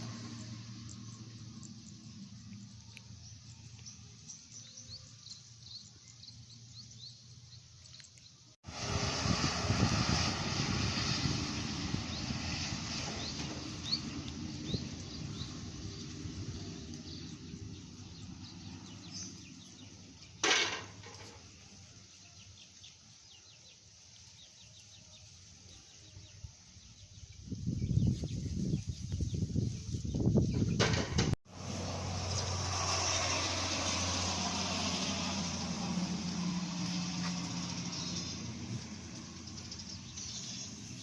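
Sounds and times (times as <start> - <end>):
vehicle approaching loudly: 0.0 - 7.9, 8.6 - 41.0
heavy vehicle engine rumble: 8.7 - 22.1, 29.4 - 41.0.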